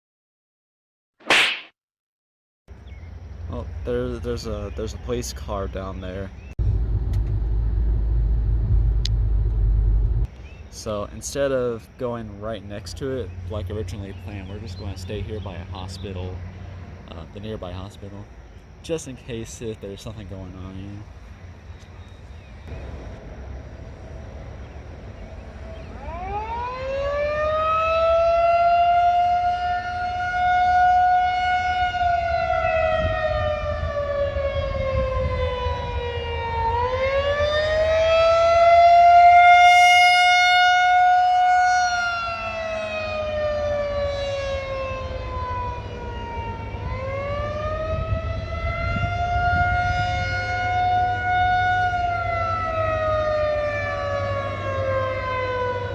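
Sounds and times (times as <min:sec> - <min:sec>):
rotating tornado siren: 0:02.7 - 0:55.9.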